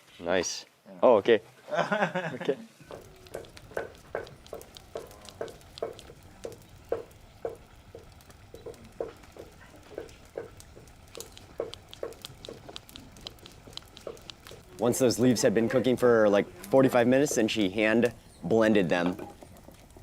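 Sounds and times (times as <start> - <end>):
wooden utensil knocking on pot: 2.9 - 14.6.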